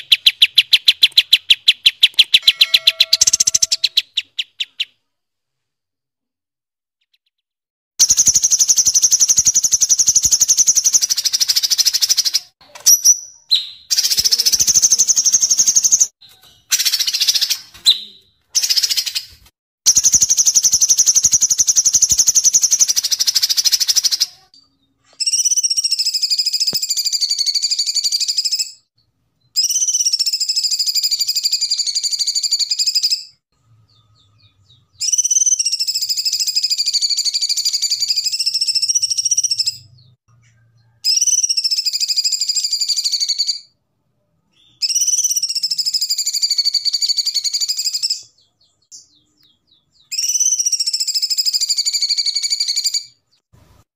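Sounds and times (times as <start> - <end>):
bird fast trills: 0.0 - 4.9
bird wavering whistles: 2.4 - 4.8.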